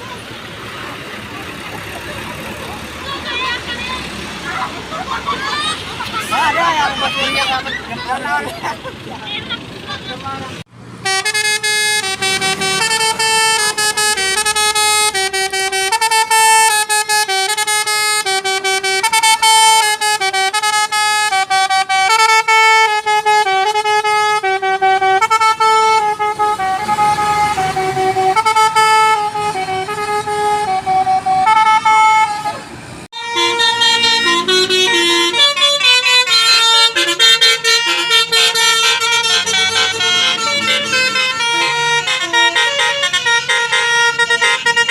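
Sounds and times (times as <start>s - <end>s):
higher-pitched bus horn tune: 11.0s - 44.9s
musical bus horn melody: 11.0s - 44.9s.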